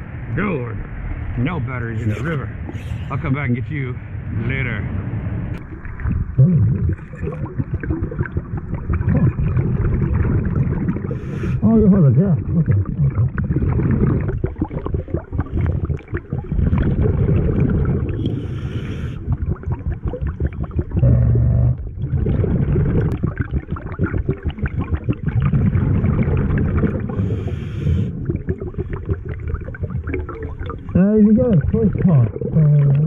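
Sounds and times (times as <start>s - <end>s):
muffled underwater rumble: 0.0s - 33.0s
regulator bubbles crackling: 5.4s - 33.0s.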